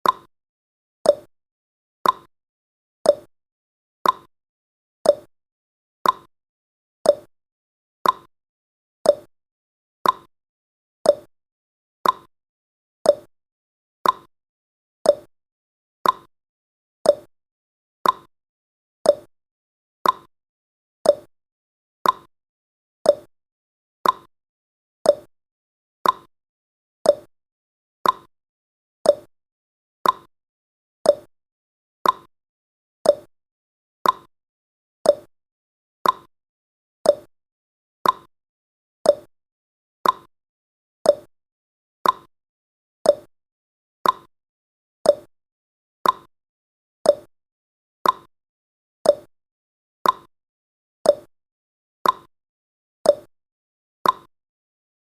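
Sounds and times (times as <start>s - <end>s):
clock tick-tock: 0.0s - 0.3s, 1.1s - 1.3s, 2.0s - 2.3s, 3.1s - 3.3s, 4.0s - 4.3s, 5.1s - 5.3s, 6.0s - 6.3s, 7.1s - 7.3s, 8.0s - 8.3s, 9.1s - 9.3s, 10.0s - 10.3s, 11.0s - 11.3s, 12.0s - 12.3s, 13.0s - 13.3s, 14.0s - 14.3s, 15.1s - 15.3s, 16.0s - 16.3s, 17.0s - 17.3s, 18.0s - 18.3s, 19.0s - 19.3s, 20.0s - 20.3s, 21.0s - 21.3s, 22.0s - 22.3s, 23.0s - 23.3s, 24.0s - 24.3s, 25.0s - 25.3s, 26.0s - 26.3s, 27.0s - 27.3s, 28.0s - 28.3s, 29.0s - 29.3s, 30.0s - 30.3s, 31.0s - 31.3s, 32.0s - 32.3s, 33.0s - 33.3s, 34.0s - 34.3s, 35.0s - 35.3s, 36.0s - 36.3s, 37.0s - 37.3s, 38.0s - 38.3s, 39.0s - 39.3s, 40.0s - 40.3s, 41.0s - 41.3s, 42.0s - 42.3s, 43.0s - 43.3s, 44.0s - 44.3s, 45.0s - 45.3s, 46.0s - 46.3s, 47.0s - 47.3s, 48.0s - 48.3s, 49.0s - 49.3s, 50.0s - 50.3s, 51.1s - 51.3s, 52.0s - 52.3s, 53.1s - 53.3s, 54.0s - 54.3s.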